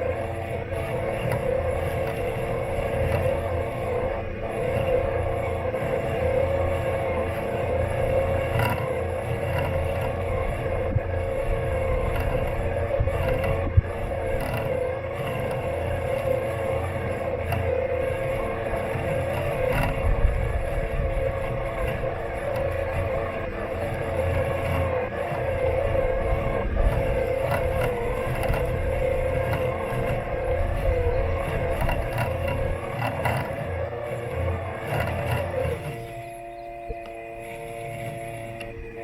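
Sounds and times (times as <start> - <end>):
lawn mower motors humming: 0.0 - 39.0.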